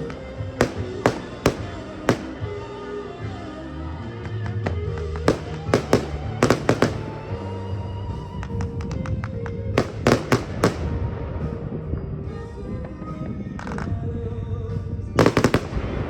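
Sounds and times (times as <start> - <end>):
fireworks bangs: 0.0 - 3.5, 4.7 - 11.6, 15.2 - 16.0
loud music: 0.5 - 4.0, 5.3 - 8.3, 9.8 - 11.2.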